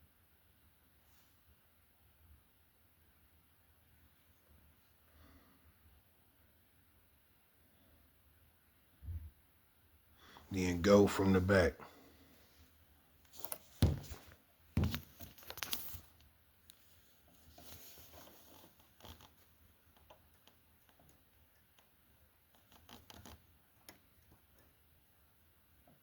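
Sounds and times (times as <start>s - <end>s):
hands handling thread and machine: 13.2s - 24.7s
knock: 13.8s - 14.2s, 14.8s - 15.0s.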